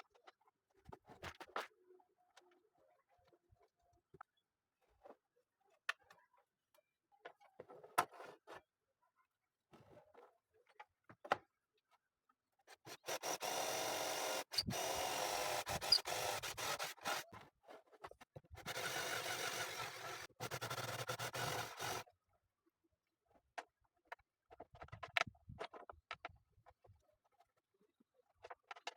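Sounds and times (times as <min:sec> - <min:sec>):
circular saw cutting wood: 0:12.9 - 0:17.3, 0:18.6 - 0:22.0.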